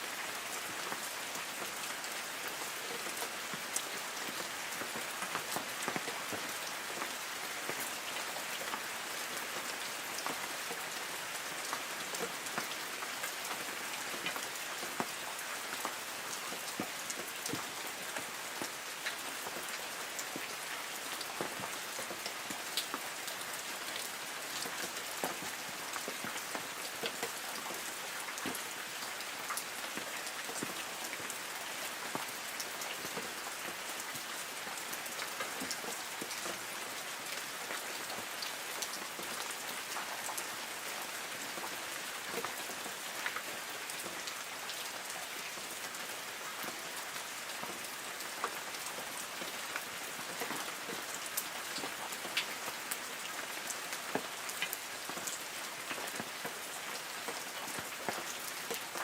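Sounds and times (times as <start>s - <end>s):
light rain on trees: 0.0s - 59.0s
raindrops pattering on leaves: 0.0s - 59.0s.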